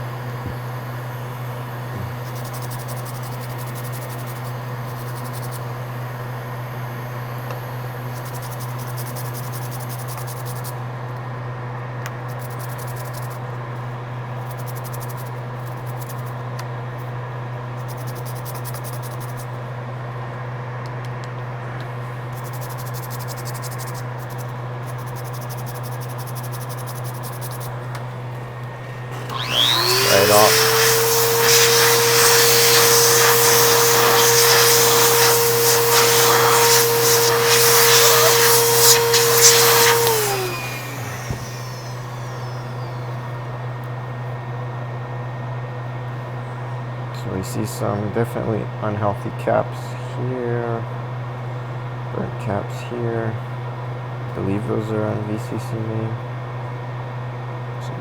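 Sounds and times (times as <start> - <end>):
high-pitched buzz: 0.0 - 9.7, 29.1 - 43.4.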